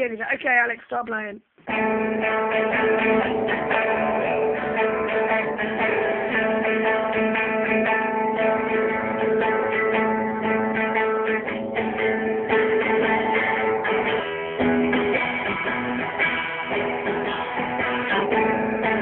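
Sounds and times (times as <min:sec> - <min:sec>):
guitar chords strummed and plucked: 0:01.1 - 0:19.0.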